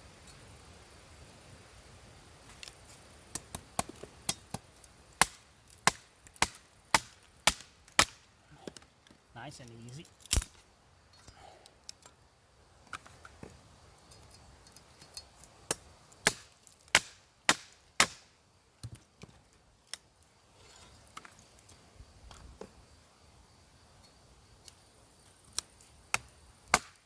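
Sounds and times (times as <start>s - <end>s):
machete struck through wood: 5.2s - 8.2s, 15.7s - 18.3s, 26.2s - 27.0s.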